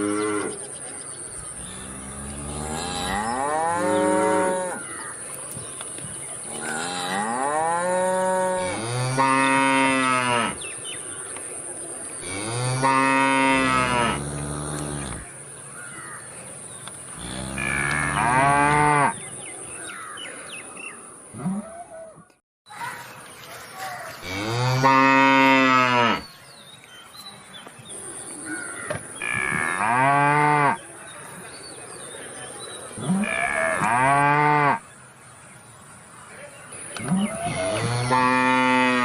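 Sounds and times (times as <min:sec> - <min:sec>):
cow mooing: 0:01.6 - 0:04.8, 0:06.6 - 0:10.6, 0:12.3 - 0:15.2, 0:17.2 - 0:19.2, 0:37.0 - 0:39.0.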